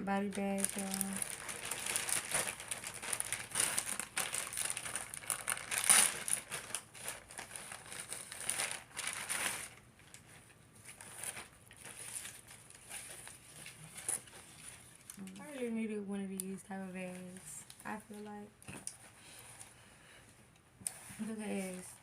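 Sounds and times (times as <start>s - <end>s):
plastic packaging crinkling: 0.0s - 15.6s.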